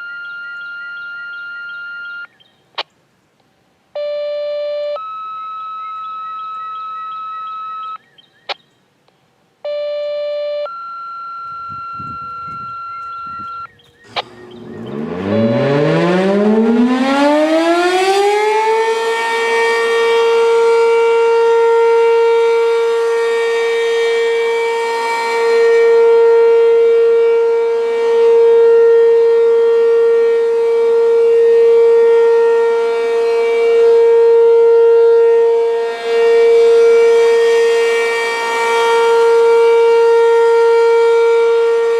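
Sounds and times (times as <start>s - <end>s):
rotating siren winding up: 11.4s - 19.5s.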